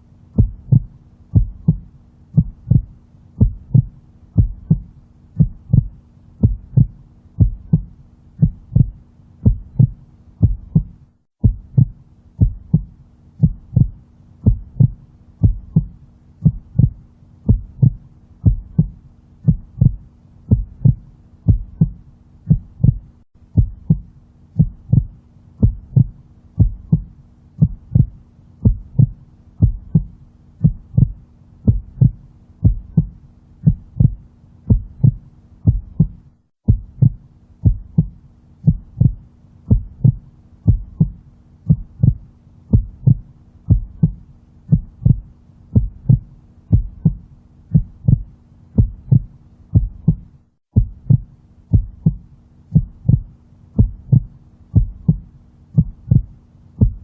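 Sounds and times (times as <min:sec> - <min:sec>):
faint low hum: 0:00.0 - 0:57.0
heartbeat thumps: 0:00.4 - 0:57.0.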